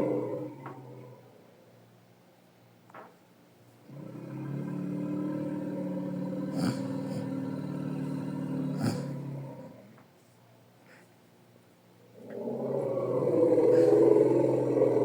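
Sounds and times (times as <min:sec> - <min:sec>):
long low creature call: 0:04.0 - 0:09.8, 0:12.2 - 0:15.0.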